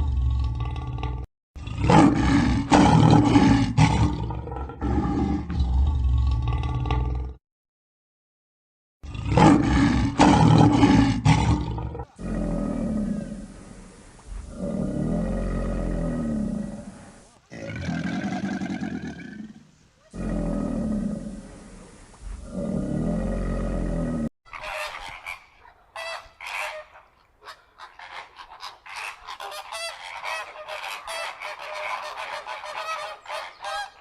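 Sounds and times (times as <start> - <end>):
big cat roaring: 0.0 - 7.4, 9.0 - 24.3.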